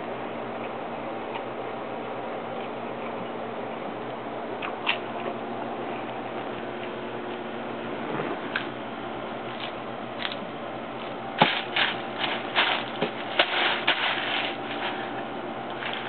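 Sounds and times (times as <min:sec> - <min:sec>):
taco shells crunching: 0:11.0 - 0:16.0.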